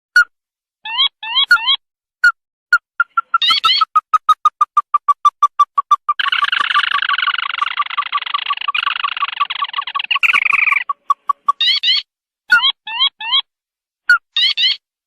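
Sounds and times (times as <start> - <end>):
short sharp bird pips: 1.4 - 12.0
harsh bird chattering: 3.0 - 12.0.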